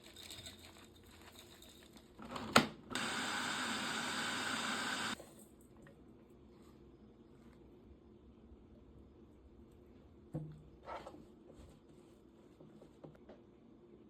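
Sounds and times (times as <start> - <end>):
kitchen appliance motor running: 2.9 - 5.2.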